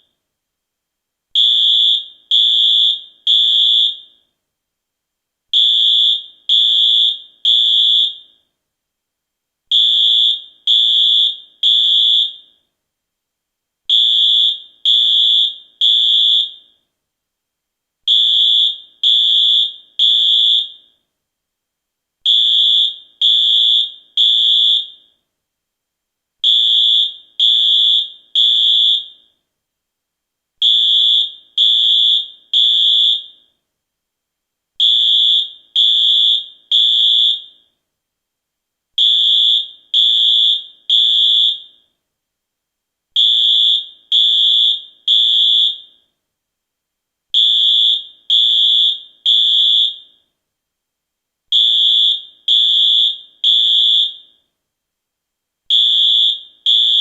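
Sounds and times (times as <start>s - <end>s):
fire alarm beeping: 1.4s - 4.2s, 5.6s - 8.4s, 9.7s - 12.6s, 13.9s - 16.8s, 18.1s - 20.9s, 22.3s - 25.2s, 26.4s - 29.4s, 30.6s - 33.5s, 34.8s - 37.7s, 39.0s - 41.8s, 43.2s - 46.1s, 47.4s - 50.2s, 51.6s - 54.4s, 55.7s - 57.0s.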